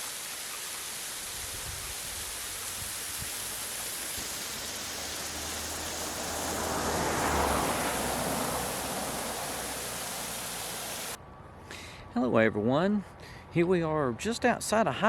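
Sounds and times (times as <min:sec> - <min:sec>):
waterfall rushing: 0:00.0 - 0:11.2.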